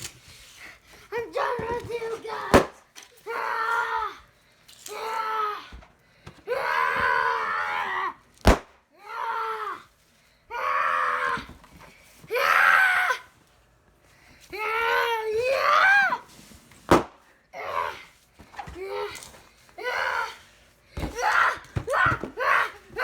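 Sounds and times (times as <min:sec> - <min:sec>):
child yelling and crying: 0:01.1 - 0:04.2, 0:04.9 - 0:05.8, 0:06.5 - 0:08.2, 0:09.0 - 0:09.9, 0:12.3 - 0:13.3, 0:14.6 - 0:16.3, 0:17.6 - 0:18.1, 0:18.8 - 0:20.4, 0:21.0 - 0:23.0
sharp pop: 0:02.5 - 0:02.8, 0:08.4 - 0:08.8, 0:16.9 - 0:17.2.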